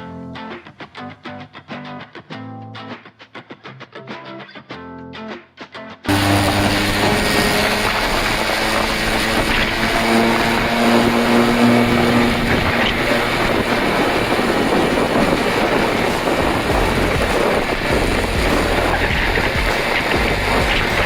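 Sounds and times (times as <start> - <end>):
scooter engine running: 6.1 - 21.0.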